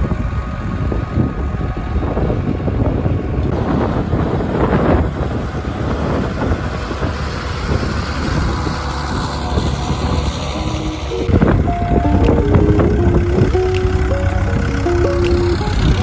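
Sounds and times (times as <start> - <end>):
tractor engine running: 8.8 - 16.0.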